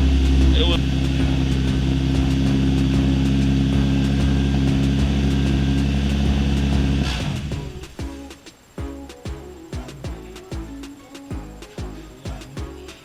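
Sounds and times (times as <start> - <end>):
car engine idling: 0.0 - 8.3.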